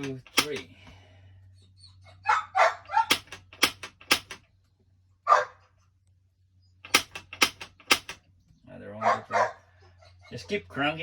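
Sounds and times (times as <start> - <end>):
dog barking: 2.1 - 3.1, 5.2 - 5.8, 9.0 - 10.0.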